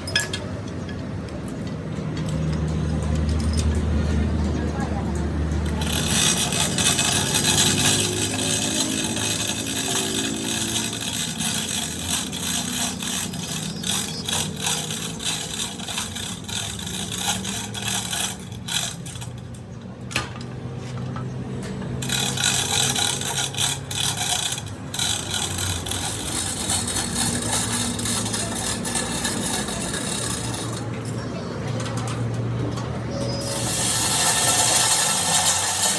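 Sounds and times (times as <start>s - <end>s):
power tool working on metal: 5.6s - 19.4s, 22.0s - 31.1s, 33.3s - 35.9s.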